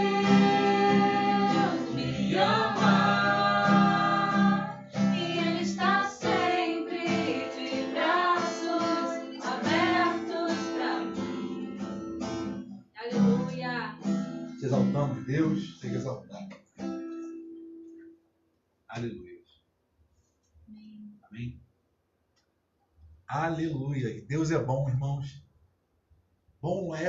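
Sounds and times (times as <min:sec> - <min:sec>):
woman singing: 0:00.0 - 0:12.1, 0:13.0 - 0:14.0
strummed acoustic guitar: 0:00.0 - 0:17.9.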